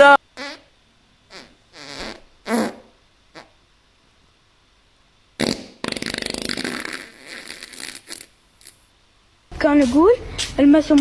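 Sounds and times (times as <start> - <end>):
farts: 0.4 - 0.7, 1.3 - 3.6, 5.4 - 8.8.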